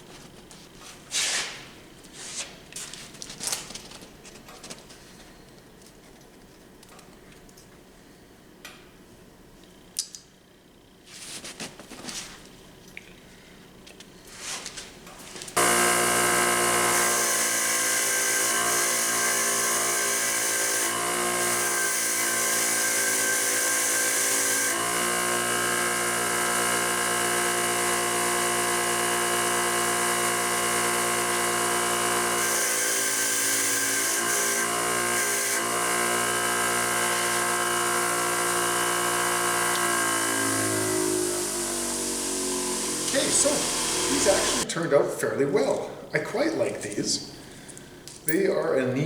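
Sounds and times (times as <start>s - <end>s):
power tool motor whine: 15.6s - 44.7s.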